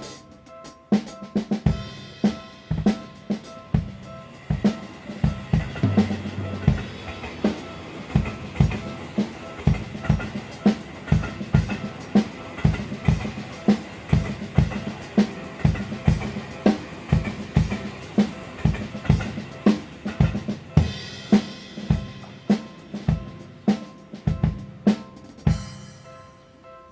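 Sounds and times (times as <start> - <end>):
drum kit playing a steady beat: 0.0 - 26.2
faint steady tones: 0.0 - 26.9
bright cymbal wash: 1.6 - 24.4
railway crossing warning bell: 4.2 - 14.0.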